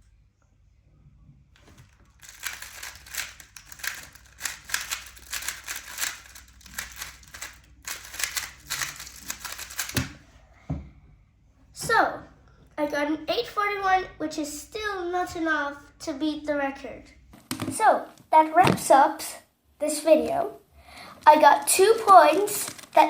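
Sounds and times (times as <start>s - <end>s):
plastic cube clicking and rattling: 1.6s - 10.2s, 21.2s - 23.0s.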